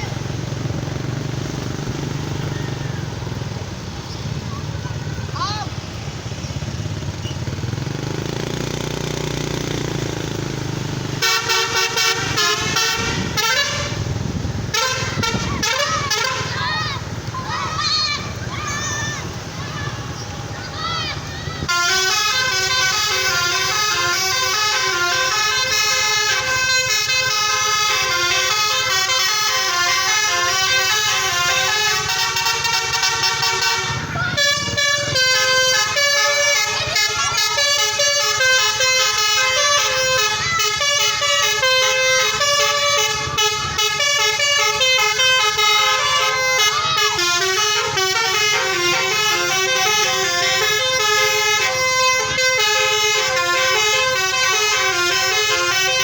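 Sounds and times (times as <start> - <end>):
multi-tone musical air horn: 11.2 - 16.6, 21.6 - 56.0.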